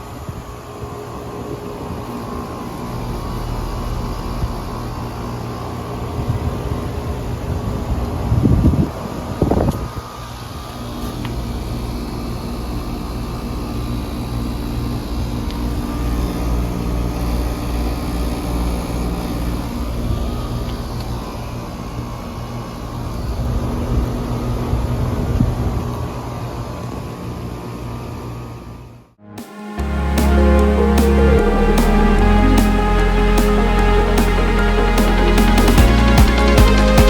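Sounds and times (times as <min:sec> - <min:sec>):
compressors humming: 0:29.2 - 0:37.0.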